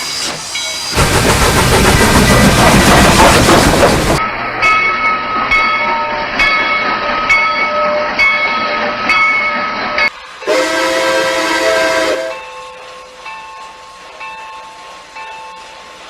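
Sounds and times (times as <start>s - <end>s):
loud steam hiss: 0.0s - 4.2s, 10.1s - 16.0s
train rolling with rail clicks: 0.0s - 16.0s
multi-note train horn: 10.4s - 12.5s.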